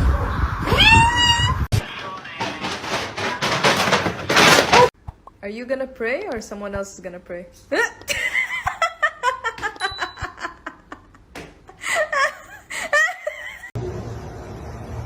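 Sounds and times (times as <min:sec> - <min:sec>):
person laughing: 0:07.8 - 0:13.7.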